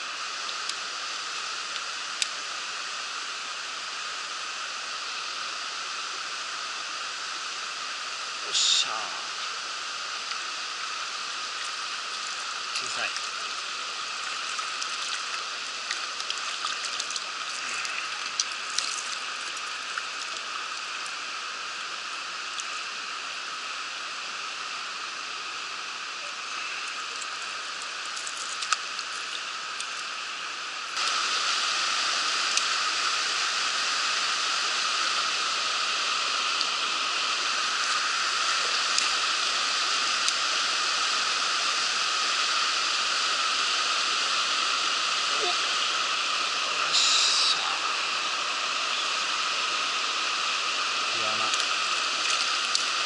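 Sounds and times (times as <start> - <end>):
water rushing over rocks: 10.3 - 21.6, 45.0 - 53.0.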